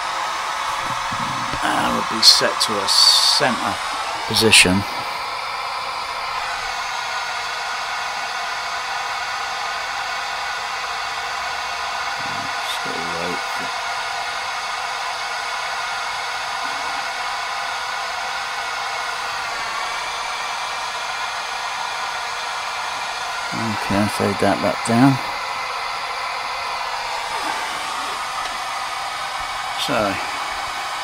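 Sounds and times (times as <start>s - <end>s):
pink noise hiss: 0.0s - 6.5s, 23.4s - 31.0s.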